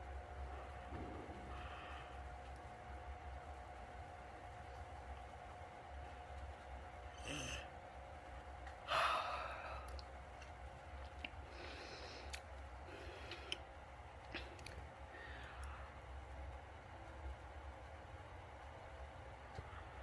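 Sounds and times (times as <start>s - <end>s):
soft breaths: 0.4s - 3.4s, 8.7s - 18.0s
person yawning: 7.2s - 7.7s, 8.9s - 9.9s.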